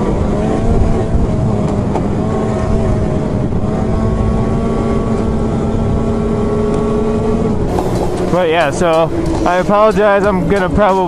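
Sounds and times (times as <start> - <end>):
snowmobile engine running: 0.0 - 11.0
rushing ride noise: 7.6 - 11.0.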